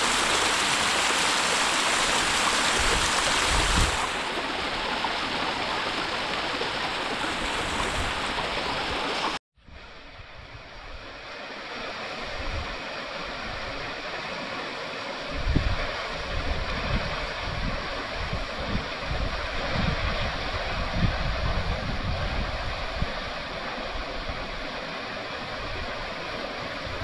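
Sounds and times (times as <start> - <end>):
river water rushing: 0.0 - 9.4.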